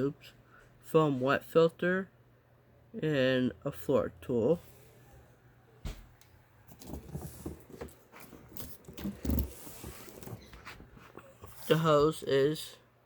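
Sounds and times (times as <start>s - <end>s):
knocks scrapes and rustles: 6.7s - 11.8s.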